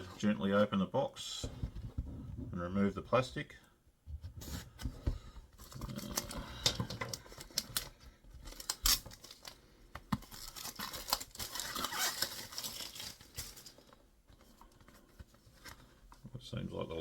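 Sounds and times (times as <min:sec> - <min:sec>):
plastic crinkling: 0:05.6 - 0:14.0
knife cutting plastic wrap: 0:10.2 - 0:13.4.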